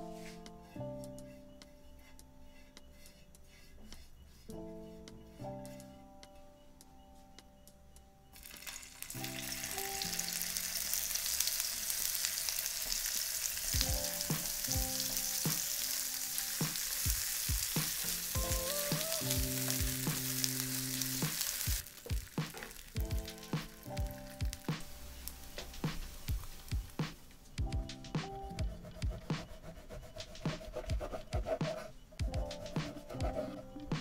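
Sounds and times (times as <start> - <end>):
food sizzling in hot oil: 8.4 - 27.0.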